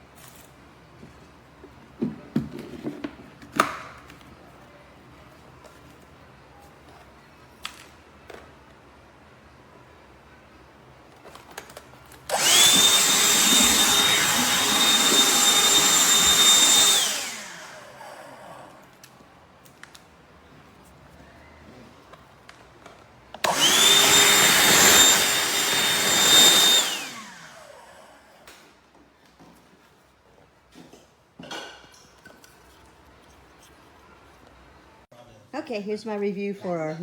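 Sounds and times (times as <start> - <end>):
handheld vacuum whining: 12.3 - 19.0, 23.4 - 28.6.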